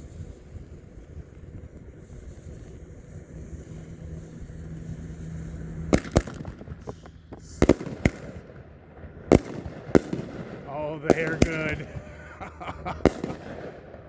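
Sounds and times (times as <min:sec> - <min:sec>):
firework shells banging: 0:05.5 - 0:14.0
faint firework pops: 0:05.9 - 0:08.5, 0:09.3 - 0:12.0, 0:13.0 - 0:14.0.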